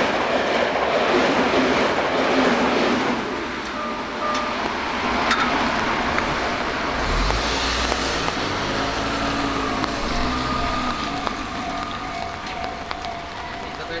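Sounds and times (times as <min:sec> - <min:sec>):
cars moving over crossing: 0:02.2 - 0:14.0
passing vehicle rumble: 0:04.0 - 0:14.0.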